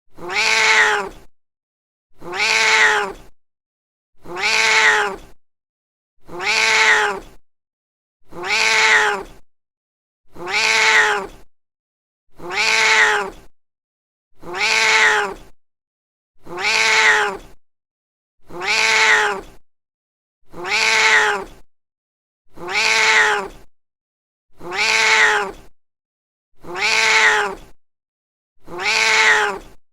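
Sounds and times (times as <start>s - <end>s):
cat meowing: 0.2s - 1.1s, 2.3s - 3.1s, 4.3s - 5.2s, 6.3s - 7.2s, 8.4s - 9.3s, 10.4s - 11.3s, 12.4s - 13.3s, 14.5s - 15.4s, 16.5s - 17.4s, 18.6s - 19.4s, 20.6s - 21.5s, 22.6s - 23.5s, 24.6s - 25.6s, 26.7s - 27.6s, 28.7s - 29.6s.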